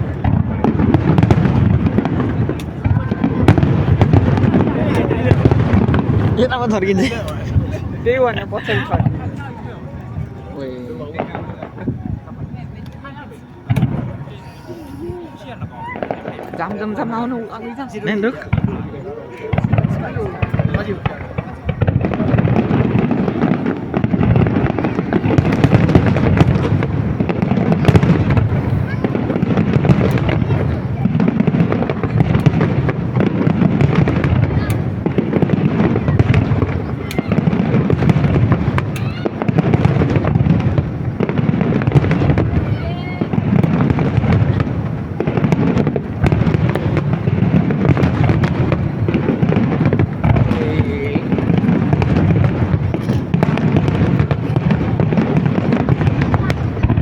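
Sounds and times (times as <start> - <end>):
fireworks bursting: 0.0 - 57.0.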